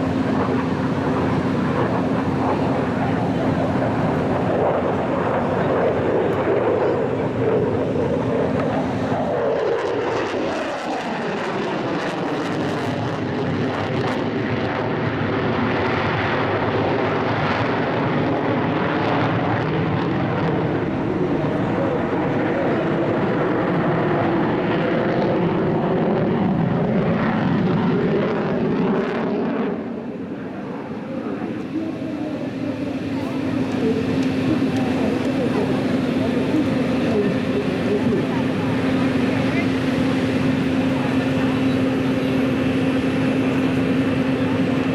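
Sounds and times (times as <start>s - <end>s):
jet engine whine falling in pitch: 0.0s - 44.9s
loud steady jet noise: 0.0s - 44.9s.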